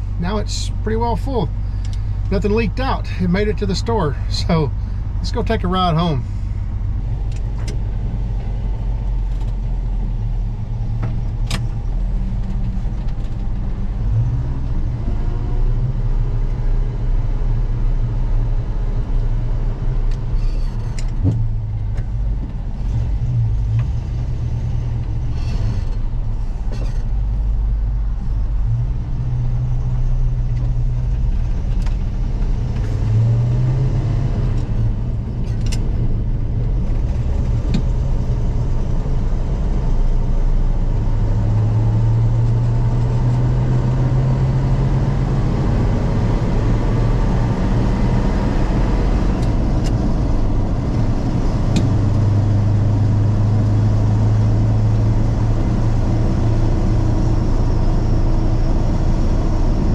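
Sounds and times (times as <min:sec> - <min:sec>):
truck engine accelerating: 0:21.0 - 0:59.9.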